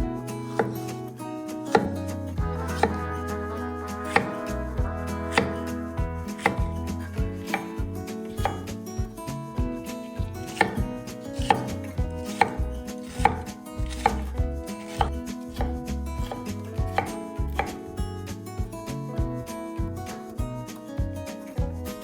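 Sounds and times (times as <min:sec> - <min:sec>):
sharp chopping knocks: 0:01.7 - 0:02.0, 0:04.1 - 0:04.4, 0:05.4 - 0:05.6, 0:06.4 - 0:17.8.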